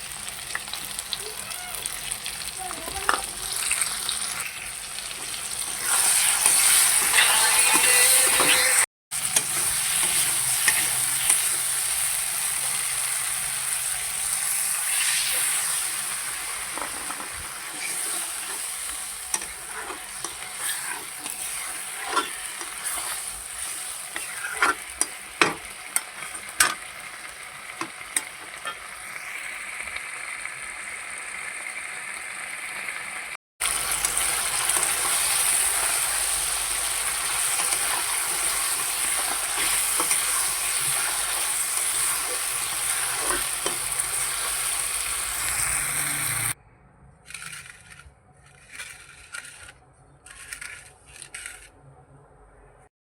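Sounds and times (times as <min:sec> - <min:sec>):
vegetables sizzling in oil: 0:00.0 - 0:46.6
spatula scraping a pan: 0:02.7 - 0:13.2, 0:14.8 - 0:29.0, 0:34.0 - 0:46.6.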